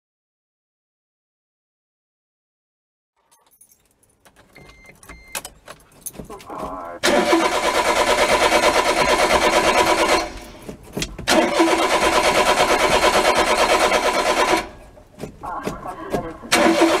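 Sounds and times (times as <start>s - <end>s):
starter motor cranking engine: 6.3s - 14.9s, 16.5s - 17.0s.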